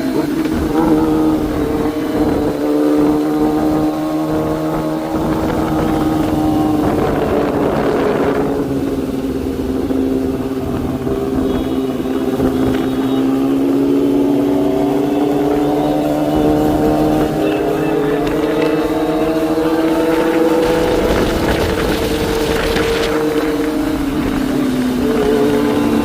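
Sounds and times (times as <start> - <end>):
motorcycle engine running: 0.0 - 26.0.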